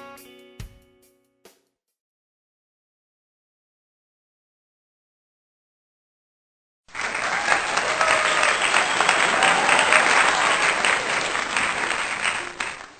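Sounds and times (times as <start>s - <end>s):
crowd applause: 6.9s - 12.9s.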